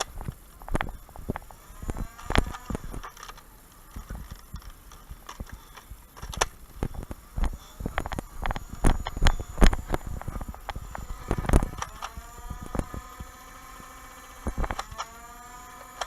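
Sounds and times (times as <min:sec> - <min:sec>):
plastic clicks and knocks: 0:00.0 - 0:13.4.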